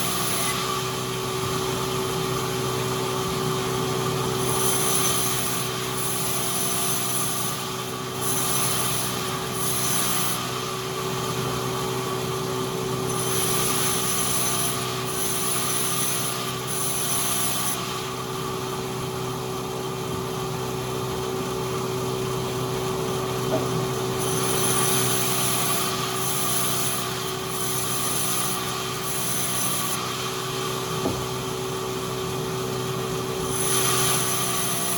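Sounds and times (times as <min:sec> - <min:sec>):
sawmill machinery motor hum: 0:00.0 - 0:34.9.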